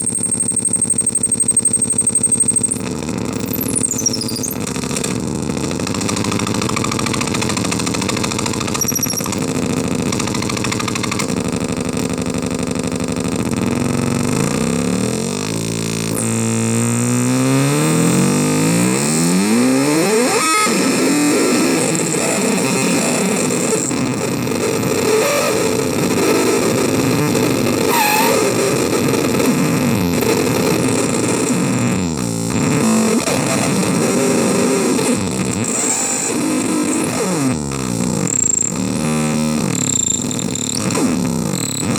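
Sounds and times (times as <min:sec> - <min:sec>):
brief squeals: 0:00.0 - 0:05.2, 0:08.4 - 0:09.6, 0:27.9 - 0:28.8, 0:39.6 - 0:41.9.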